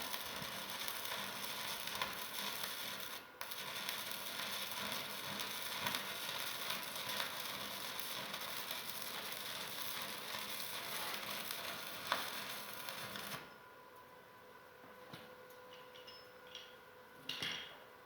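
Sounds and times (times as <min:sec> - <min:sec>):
welding arc crackling and sizzling: 0:00.0 - 0:13.5.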